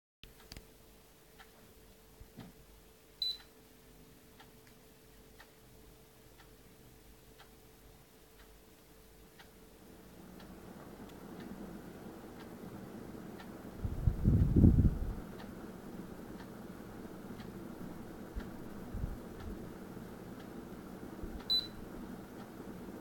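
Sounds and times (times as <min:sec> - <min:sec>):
air conditioner low hum: 0:00.2 - 0:23.0
air conditioner beep: 0:03.2 - 0:03.6, 0:09.6 - 0:23.0
faint ticking: 0:04.4 - 0:23.0.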